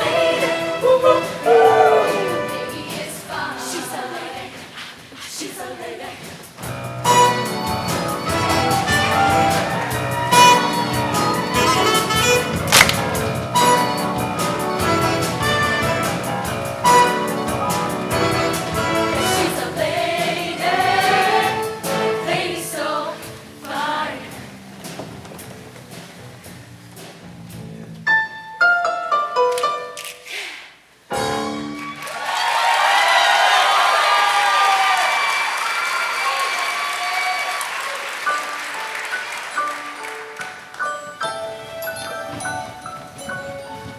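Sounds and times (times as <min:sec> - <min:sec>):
choir singing: 0:00.0 - 0:06.6, 0:15.8 - 0:24.5
live band playing: 0:06.8 - 0:22.4, 0:31.1 - 0:32.0.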